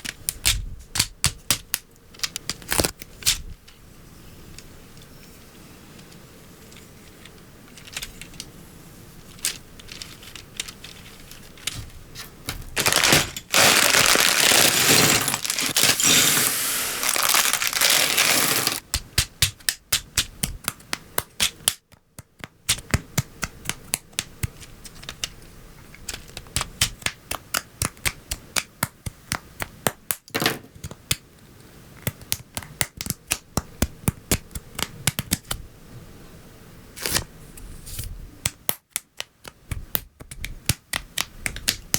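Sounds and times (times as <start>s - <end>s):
plastic pieces clicking together: 0.0s - 3.5s, 9.2s - 31.2s
loose plastic pieces rattling: 6.8s - 8.6s, 9.2s - 18.8s.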